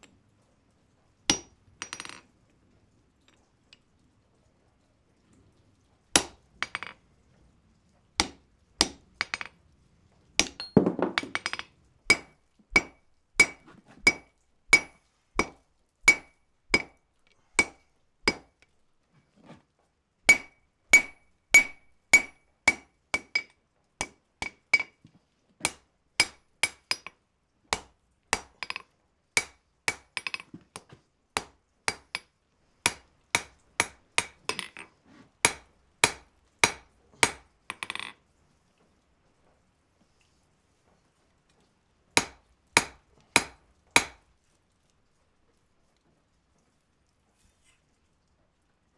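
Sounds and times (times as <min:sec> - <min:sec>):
hammer ringing on anvil: 0:12.1 - 0:14.2, 0:14.8 - 0:15.5, 0:20.3 - 0:23.4.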